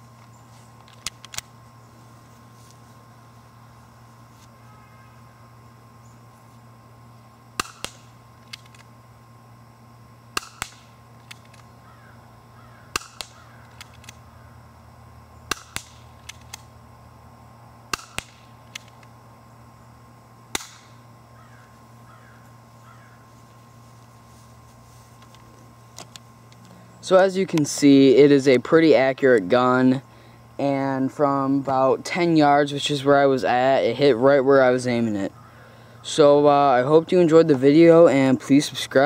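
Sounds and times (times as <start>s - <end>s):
airsoft pistol pops: 7.6s - 8.8s, 10.4s - 11.6s, 12.9s - 14.2s, 15.5s - 16.6s, 17.9s - 19.0s, 20.5s - 20.9s.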